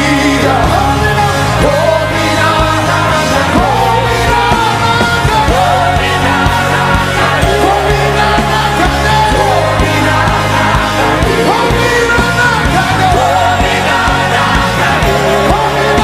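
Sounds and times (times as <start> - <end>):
band playing sustained chords: 0.0 - 16.0
voices singing: 0.0 - 16.0.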